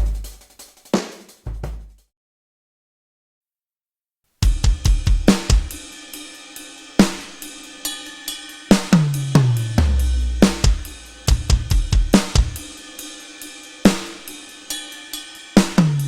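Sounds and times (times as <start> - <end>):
drum kit fill: 0.0 - 2.0, 4.4 - 16.0
cymbal crashes: 4.5 - 16.0.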